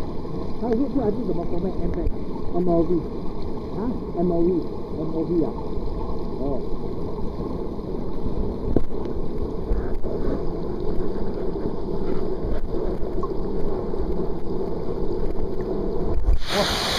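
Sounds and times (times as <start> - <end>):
wind rumbling on microphone: 0.0 - 16.9
waterfall rushing: 16.3 - 16.9.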